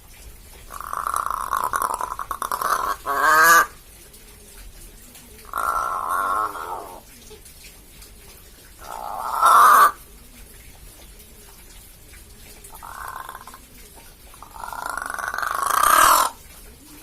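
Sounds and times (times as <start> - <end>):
crow calling: 0.7 - 3.8, 5.4 - 7.0, 8.8 - 10.0, 12.7 - 13.6, 14.4 - 16.4.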